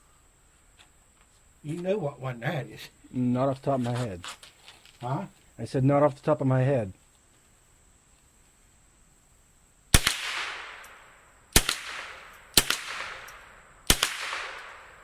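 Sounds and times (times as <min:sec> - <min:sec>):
rifle shots echoing: 0:09.9 - 0:15.0.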